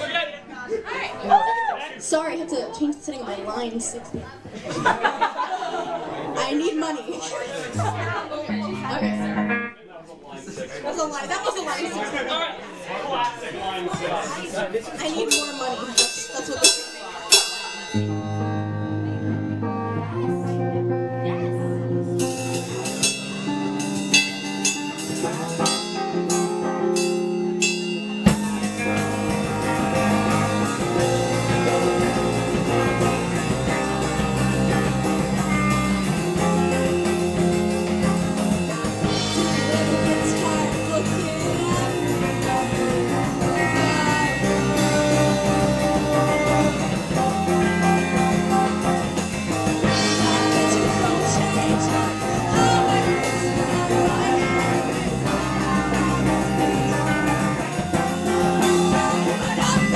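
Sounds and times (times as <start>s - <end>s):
live rock band playing: 6.4s - 9.8s, 15.0s - 59.9s
electric guitar: 7.7s - 9.8s, 17.9s - 59.9s.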